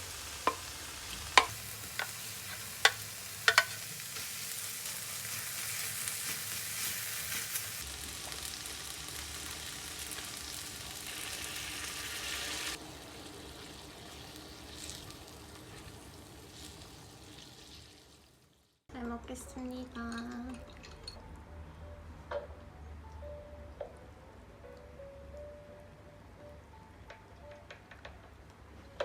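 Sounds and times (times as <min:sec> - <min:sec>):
food sizzling on a griddle: 0:00.0 - 0:18.8.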